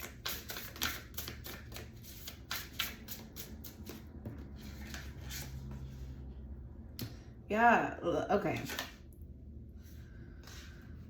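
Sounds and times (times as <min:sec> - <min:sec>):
cards being shuffled: 0:00.0 - 0:04.0.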